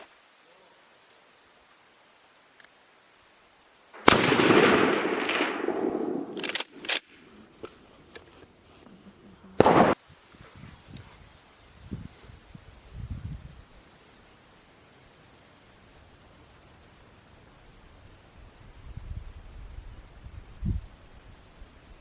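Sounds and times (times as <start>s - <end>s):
rifle shot with echo: 4.0s - 7.7s, 9.6s - 10.0s
sharp clicks: 4.0s - 8.5s.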